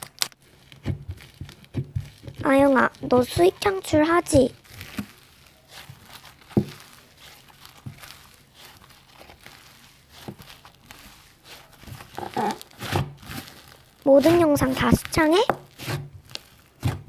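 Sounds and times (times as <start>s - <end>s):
faint rustling: 0.4s - 17.0s.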